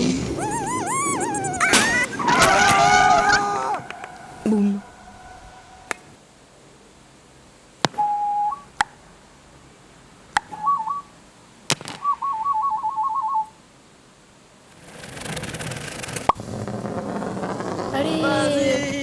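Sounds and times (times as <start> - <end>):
whistled sound effects: 0.0 - 6.2, 8.0 - 8.7, 12.0 - 13.5.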